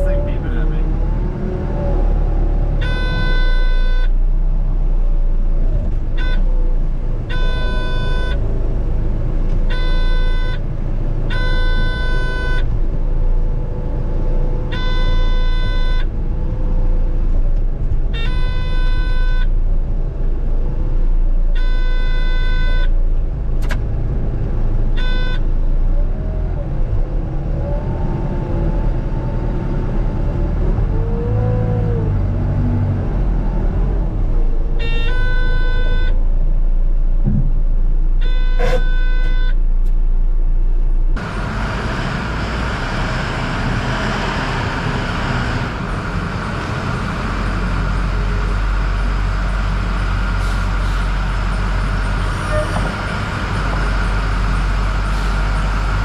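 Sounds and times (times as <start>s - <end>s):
diesel equipment rumbling: 0.0s - 56.0s
horn blasts: 2.8s - 4.1s, 6.2s - 6.5s, 7.3s - 8.4s, 9.7s - 10.6s, 11.3s - 12.7s, 14.7s - 16.0s, 18.2s - 19.5s, 25.0s - 25.4s, 34.8s - 36.2s, 38.2s - 39.6s.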